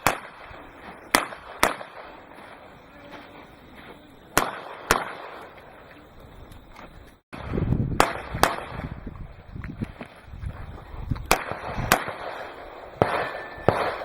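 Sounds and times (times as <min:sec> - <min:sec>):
gunshots: 0:00.0 - 0:02.6, 0:04.3 - 0:05.6, 0:08.0 - 0:08.9, 0:11.3 - 0:14.0.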